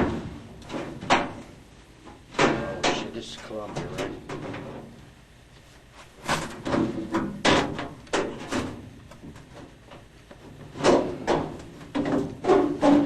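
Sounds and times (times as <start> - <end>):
metal knocks and clanks: 6.3 - 10.1, 10.7 - 13.0.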